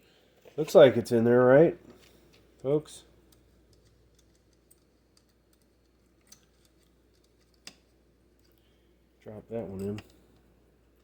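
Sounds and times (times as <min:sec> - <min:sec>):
small metal screws clicking: 0:03.3 - 0:08.6.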